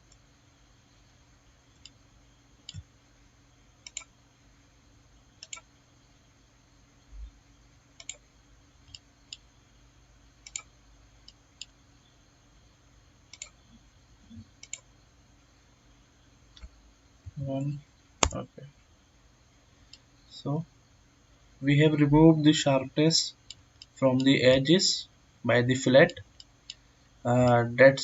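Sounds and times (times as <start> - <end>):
low room hum: 0.0 - 28.0
computer mouse clicking: 1.8 - 2.0, 2.6 - 2.9, 3.8 - 4.2, 5.4 - 5.7, 8.0 - 8.2, 10.4 - 11.8, 13.3 - 13.6, 14.6 - 14.9.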